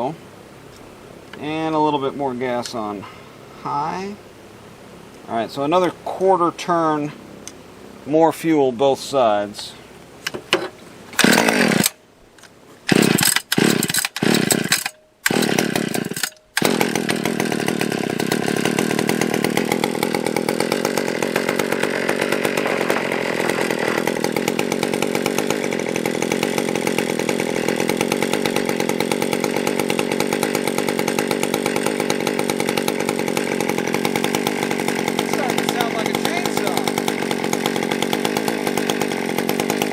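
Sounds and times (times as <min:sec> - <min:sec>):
chainsaw engine sputtering and running: 0:11.2 - 0:12.0, 0:12.9 - 0:39.9.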